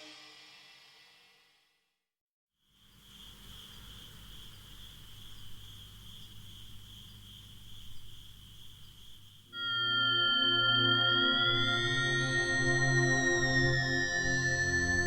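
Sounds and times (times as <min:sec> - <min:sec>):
crickets trilling: 0:02.7 - 0:10.1
synth music: 0:09.6 - 0:15.0.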